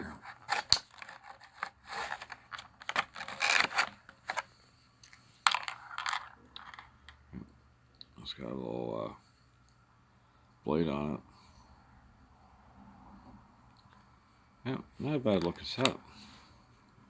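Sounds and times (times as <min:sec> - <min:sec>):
plastic tool tray rattling: 0:00.1 - 0:04.5, 0:05.5 - 0:06.9.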